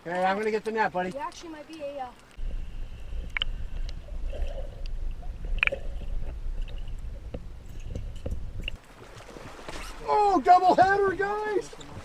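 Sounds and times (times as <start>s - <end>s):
low wind rumble: 2.2s - 12.0s
microphone handling noise: 2.4s - 8.8s.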